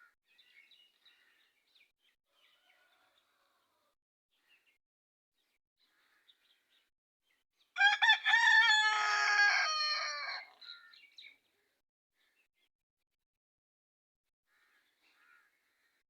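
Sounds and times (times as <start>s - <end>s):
rooster crowing: 2.3s - 3.9s, 7.8s - 10.6s.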